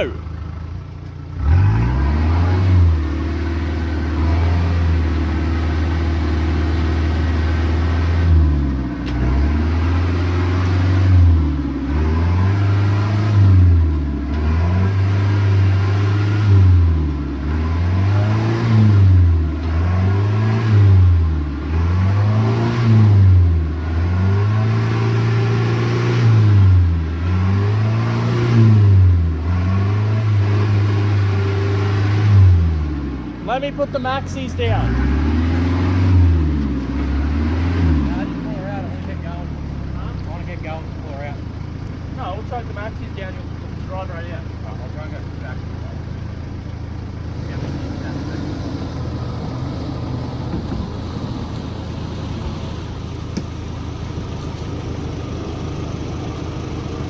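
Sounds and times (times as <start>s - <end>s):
engine revving: 1.3s - 57.0s.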